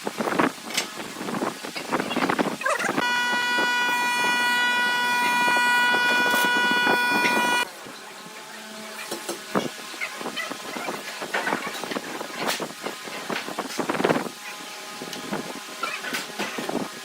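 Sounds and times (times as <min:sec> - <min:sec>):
high-pitched power tool whine: 0:03.0 - 0:09.5.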